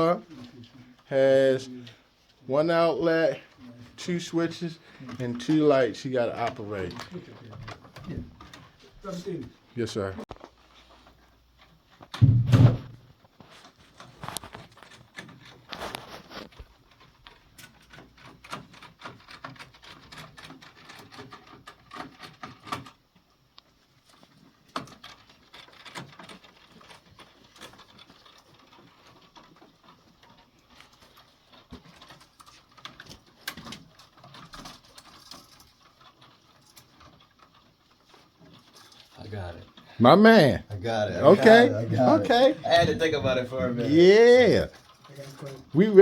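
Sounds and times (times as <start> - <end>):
clicks and taps of wiring work: 10.3 - 39.9
loud thump: 12.2 - 13.0
sharp knock: 12.2 - 13.0.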